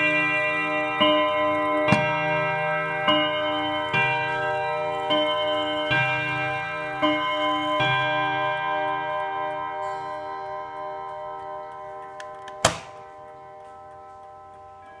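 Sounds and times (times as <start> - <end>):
mantel clock striking: 0.0 - 15.0
sharp click: 12.2 - 13.1.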